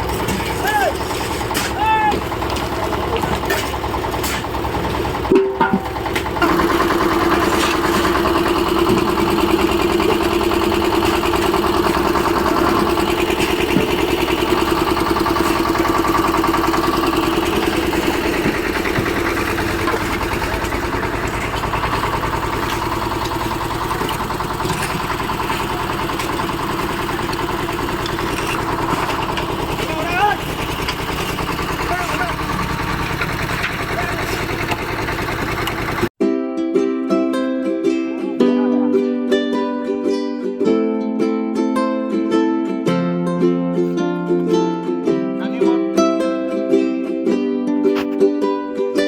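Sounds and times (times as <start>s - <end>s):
construction machine engine running: 0.0s - 36.2s.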